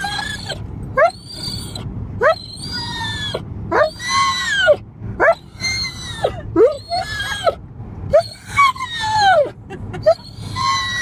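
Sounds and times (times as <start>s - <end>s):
car road rumble: 0.0s - 11.0s
dog whining and yelping: 0.0s - 11.0s.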